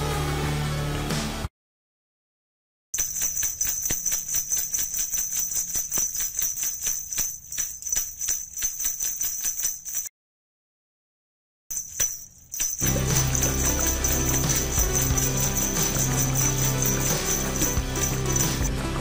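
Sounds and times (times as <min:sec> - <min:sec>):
small bells jingling: 0:03.0 - 0:10.1, 0:11.7 - 0:19.0.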